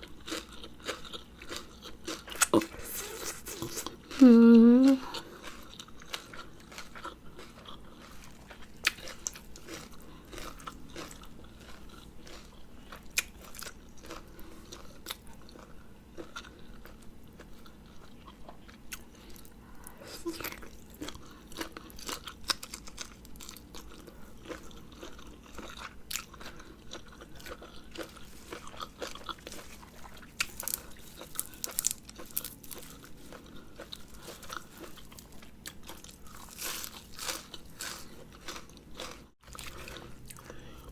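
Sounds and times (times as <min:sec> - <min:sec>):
person chewing and crunching food: 0:00.0 - 0:40.9.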